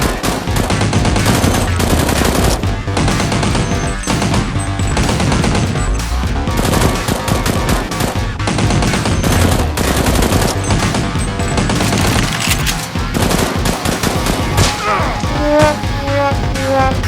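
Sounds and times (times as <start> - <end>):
background music: 0.0 - 17.0
automatic gunfire bursts: 6.5 - 14.2.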